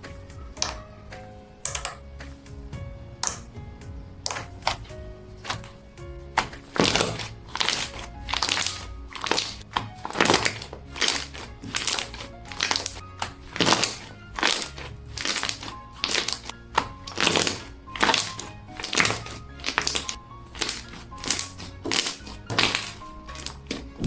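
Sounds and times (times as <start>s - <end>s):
soft background music: 0.0s - 24.0s
slime squishing with wet clicks: 1.7s - 2.0s, 6.4s - 24.0s.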